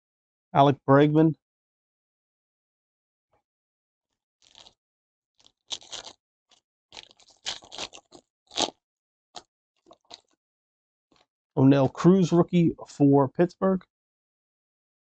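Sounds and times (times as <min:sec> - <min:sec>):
foil wrapper crinkling and tearing: 0:04.4 - 0:04.8, 0:05.4 - 0:06.2, 0:06.9 - 0:08.8.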